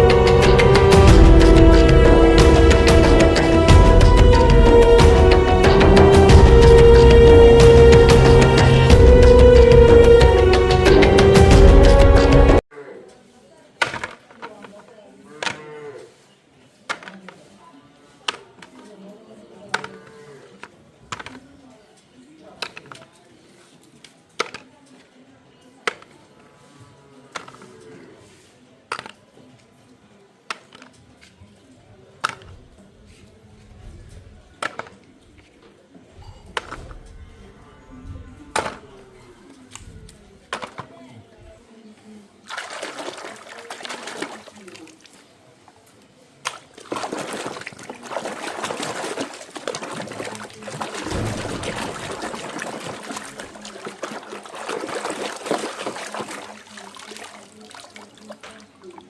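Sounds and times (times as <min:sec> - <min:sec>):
water trickling and splashing: 0:42.1 - 0:59.0.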